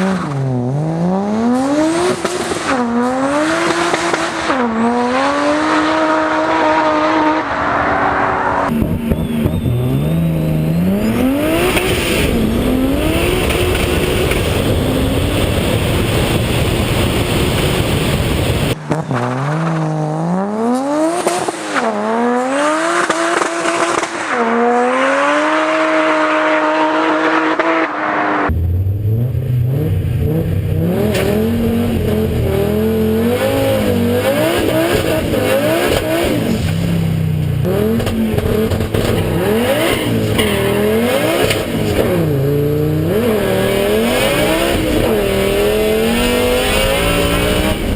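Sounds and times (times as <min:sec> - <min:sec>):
race car engine accelerating: 0:00.0 - 0:47.9.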